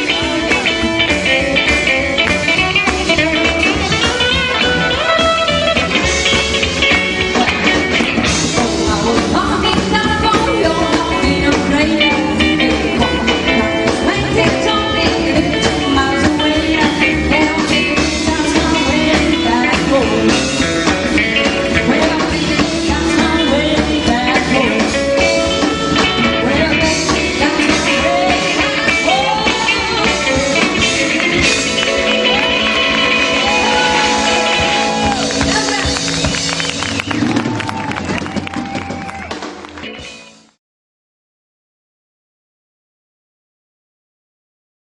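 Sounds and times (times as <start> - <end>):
rockabilly band playing live: 0.0 - 40.6
woman singing: 7.2 - 33.9.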